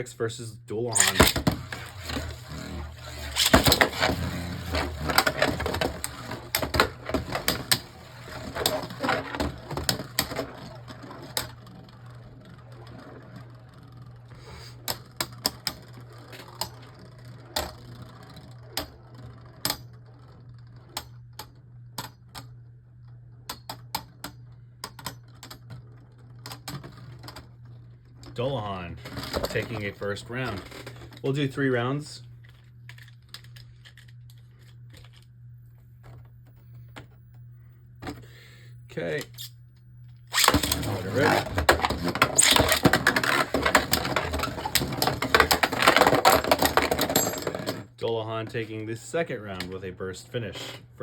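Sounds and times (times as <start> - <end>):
spinning tops clashing: 0.9 - 10.6.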